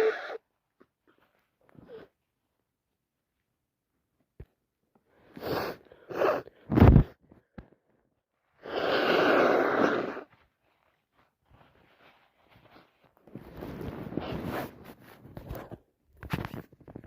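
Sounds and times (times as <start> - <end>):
woman blowing her nose: 0.0 - 0.4, 5.3 - 7.0, 8.6 - 10.4.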